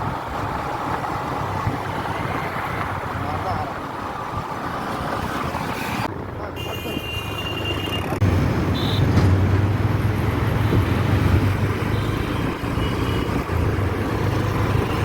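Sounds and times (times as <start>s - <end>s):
road traffic engine rumble: 0.0s - 15.0s.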